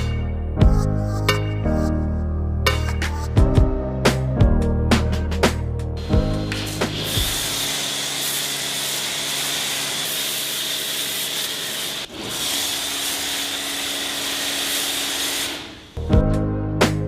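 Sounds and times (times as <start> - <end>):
sanding hiss: 6.0 - 16.0.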